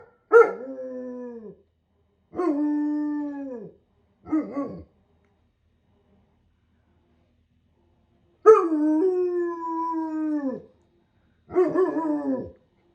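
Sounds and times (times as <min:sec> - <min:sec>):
dog howling: 0:11.5 - 0:12.6.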